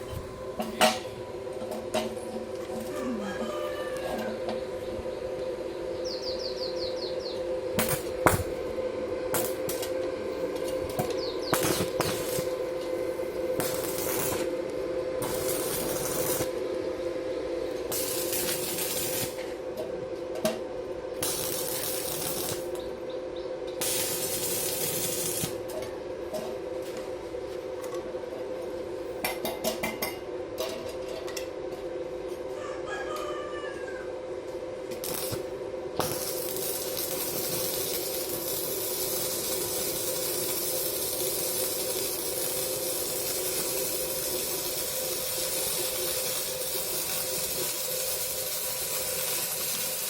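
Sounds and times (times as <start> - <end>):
machine hum: 0.0 - 50.0
welding arc hissing: 7.7 - 19.6, 21.2 - 23.0, 23.8 - 25.8, 34.9 - 50.0.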